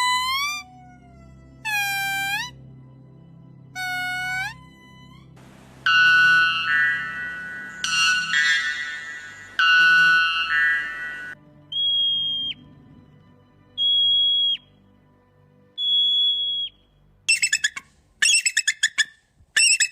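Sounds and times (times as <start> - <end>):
bird whistles dropping in pitch: 11.7 - 12.6, 13.8 - 14.7, 15.8 - 19.0
harsh pulsed bird calls: 13.8 - 14.7, 15.8 - 19.9.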